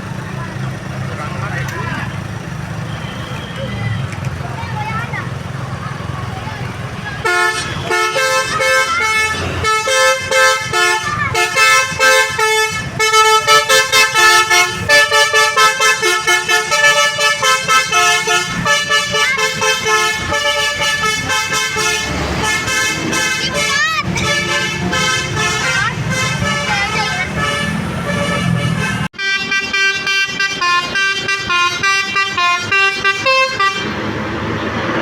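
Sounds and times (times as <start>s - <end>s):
multi-tone bus horn melody: 7.1s - 34.3s.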